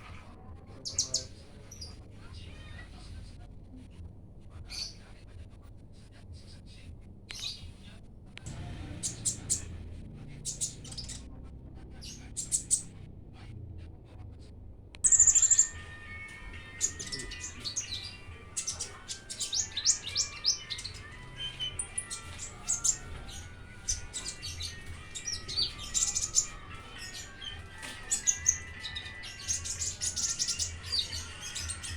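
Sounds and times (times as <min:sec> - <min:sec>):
songbird chirping and trilling: 0:00.0 - 0:03.8, 0:04.6 - 0:05.2, 0:07.3 - 0:14.2, 0:15.0 - 0:31.9.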